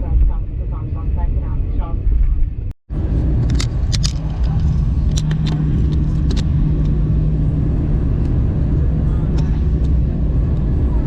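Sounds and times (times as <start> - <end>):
steady hum: 0.0 - 11.0
vehicle rumble from inside: 0.0 - 11.0.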